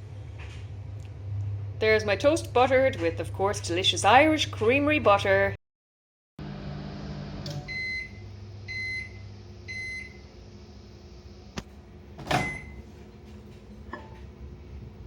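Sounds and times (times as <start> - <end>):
microwave oven humming: 0.0 - 5.4, 6.4 - 15.0
microwave beeps: 7.4 - 10.3, 12.2 - 12.9.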